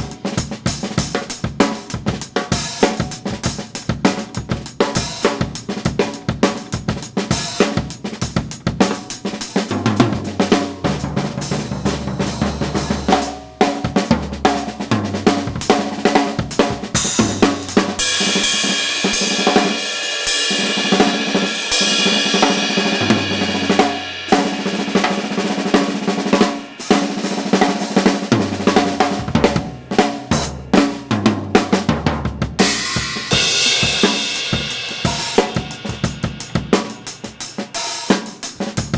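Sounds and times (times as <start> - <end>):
drum kit playing fast: 0.0 - 38.9
cymbal wash: 17.0 - 28.3, 32.7 - 38.1.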